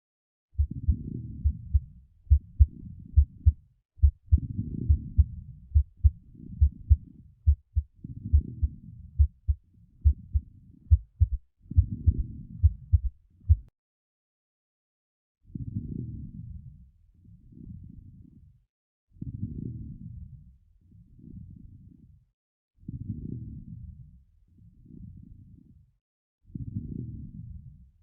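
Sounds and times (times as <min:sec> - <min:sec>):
galloping heartbeat thumps: 0:00.6 - 0:13.7.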